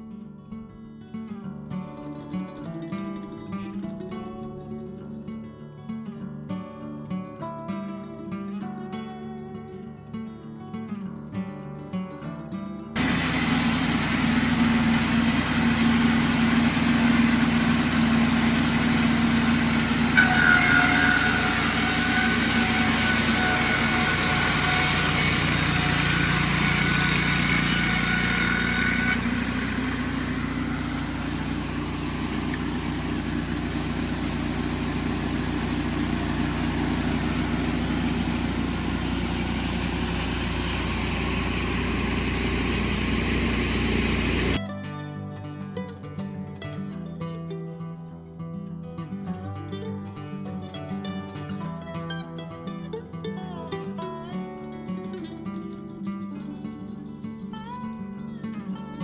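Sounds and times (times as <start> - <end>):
high steady whine: 13.0 - 44.6
sawmill engine running: 13.0 - 44.6.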